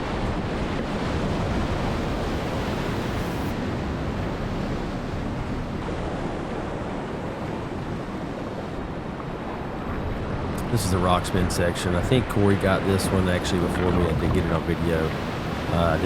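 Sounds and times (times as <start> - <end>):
creek rapids rushing: 5.2 - 16.0.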